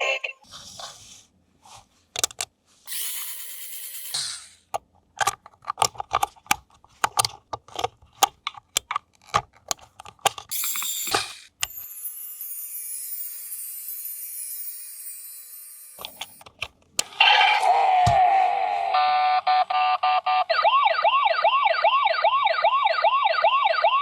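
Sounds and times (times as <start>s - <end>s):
plastic toy parts clicking: 2.2s - 2.5s, 4.7s - 11.9s, 16.0s - 17.2s.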